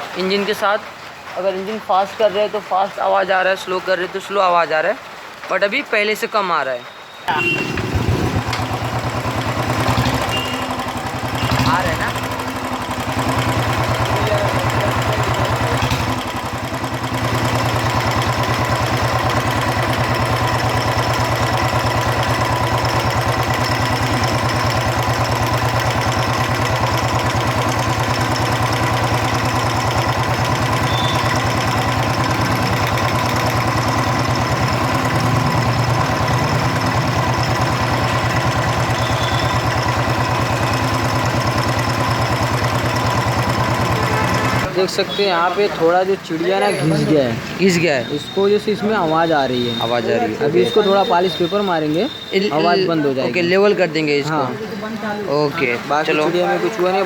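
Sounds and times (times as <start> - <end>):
motorcycle engine idling: 7.3 - 45.9.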